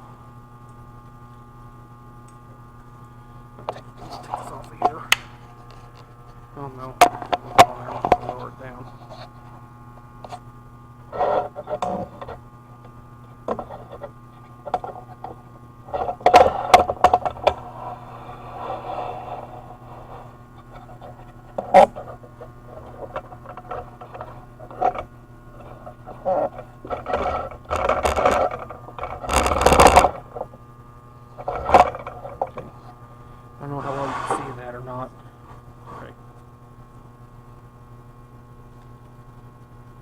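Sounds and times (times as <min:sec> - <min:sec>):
steady low hum: 0:00.0 - 0:40.0
objects knocking and scraping: 0:19.7 - 0:30.5, 0:31.4 - 0:32.8.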